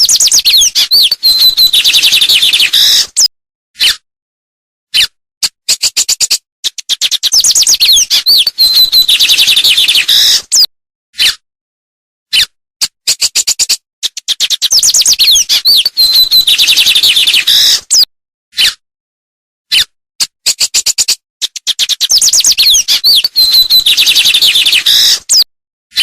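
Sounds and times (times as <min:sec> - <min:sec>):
songbird singing: 0:00.0 - 0:03.1, 0:06.8 - 0:10.7, 0:14.3 - 0:18.0, 0:21.8 - 0:25.4.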